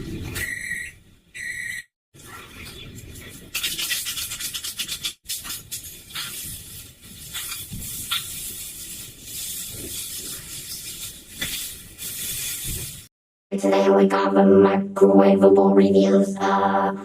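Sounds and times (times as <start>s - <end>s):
harsh processed hissing noise: 5.6s - 13.1s.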